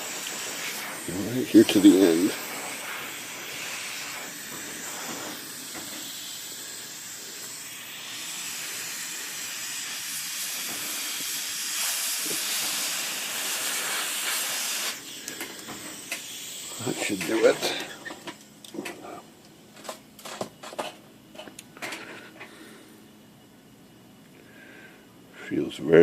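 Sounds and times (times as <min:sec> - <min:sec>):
compressed air gun hissing: 0:00.0 - 0:18.3.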